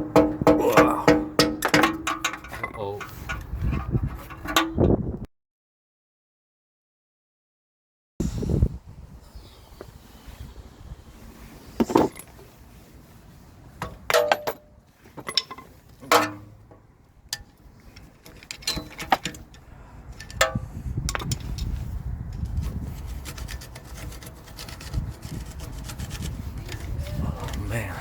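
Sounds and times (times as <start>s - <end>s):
hand tools clinking on metal: 14.1s - 16.6s, 17.3s - 19.6s
metal rubbing and scraping: 21.2s - 27.8s.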